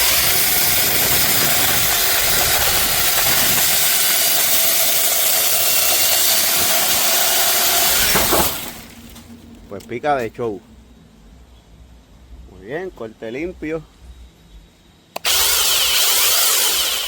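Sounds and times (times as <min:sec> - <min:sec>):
electric chainsaw cutting wood: 0:00.0 - 0:09.2, 0:15.2 - 0:17.0.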